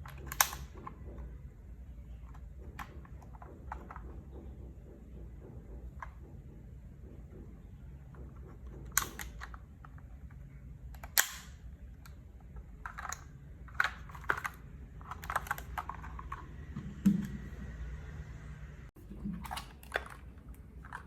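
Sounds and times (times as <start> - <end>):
mechanical keyboard keys clacking: 11.0 - 17.4.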